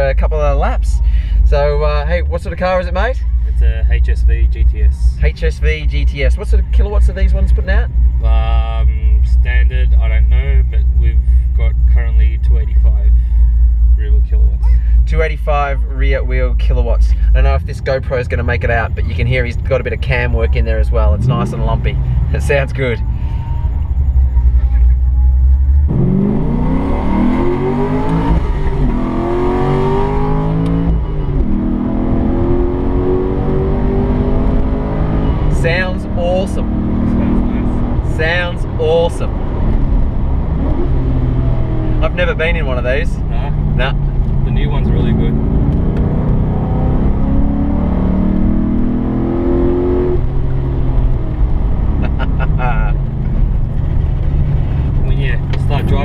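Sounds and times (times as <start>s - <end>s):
car engine accelerating hard: 16.3s - 56.0s.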